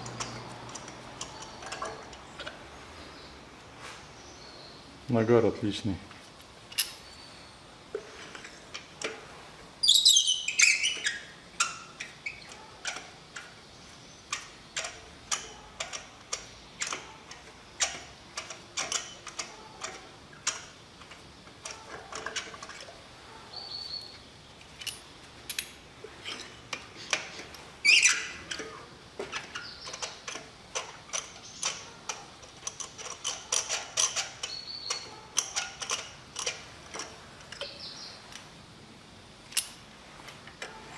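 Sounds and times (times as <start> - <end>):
bird chirps and peeps: 9.8 - 11.2.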